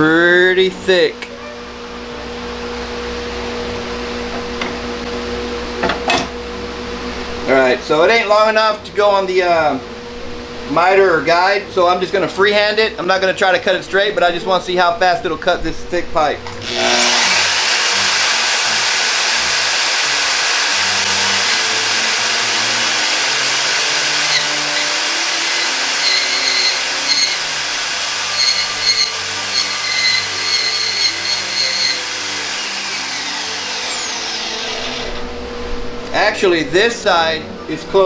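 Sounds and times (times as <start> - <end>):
band saw cutting pipe: 16.6 - 35.4.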